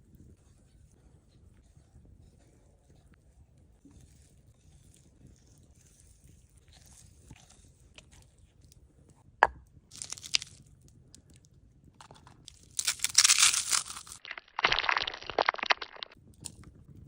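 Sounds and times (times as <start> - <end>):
crunching: 9.9 - 10.6, 12.5 - 16.2.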